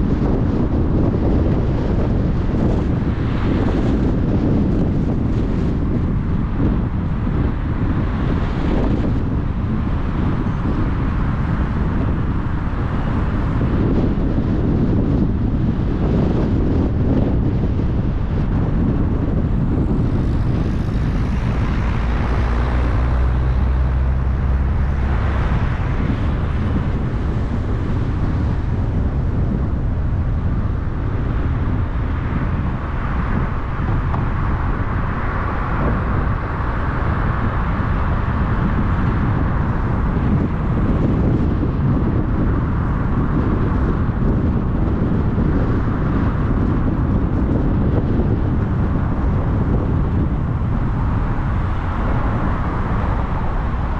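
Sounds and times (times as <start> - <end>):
tyre and wind roar: 0.0 - 53.9
low hum: 16.2 - 32.6.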